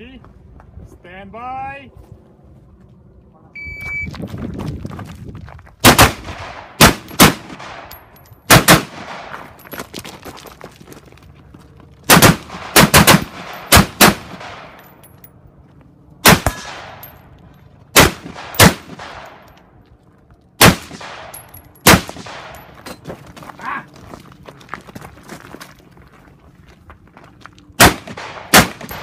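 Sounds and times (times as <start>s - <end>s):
rifle shots with echo: 5.8s - 9.3s, 12.1s - 14.8s, 16.2s - 17.2s, 17.9s - 19.5s, 20.6s - 22.7s, 27.8s - 29.0s.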